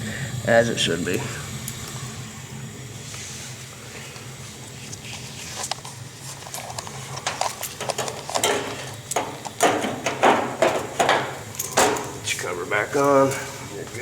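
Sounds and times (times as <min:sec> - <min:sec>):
steady low hum: 0:00.0 - 0:14.0
sheet metal clattering: 0:07.2 - 0:13.3.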